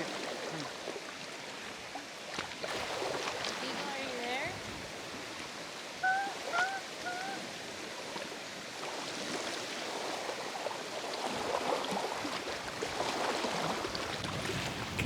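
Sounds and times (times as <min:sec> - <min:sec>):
bird calling short notes: 0:06.0 - 0:07.5.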